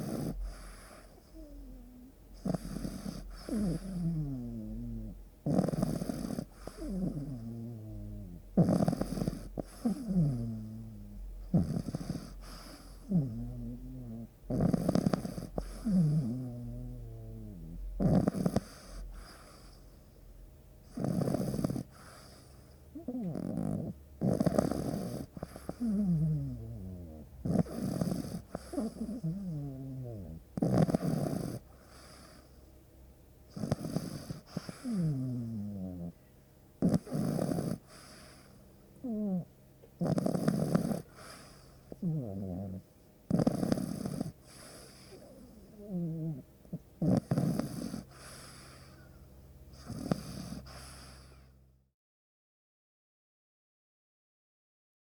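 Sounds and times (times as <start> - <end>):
puppy snoring: 0.0 - 20.2, 20.8 - 32.6, 33.4 - 51.7.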